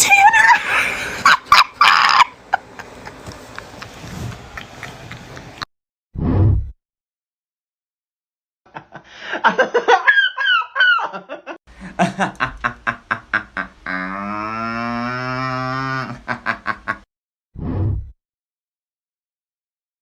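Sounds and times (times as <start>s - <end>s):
person laughing hard: 0.0s - 3.9s, 8.8s - 14.3s, 15.4s - 17.1s.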